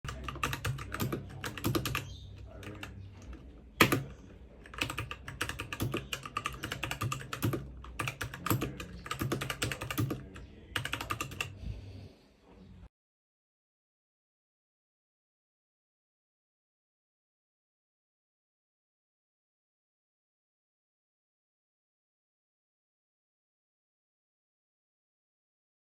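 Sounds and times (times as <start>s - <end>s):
typing on mechanical keyboard: 0.1s - 11.5s.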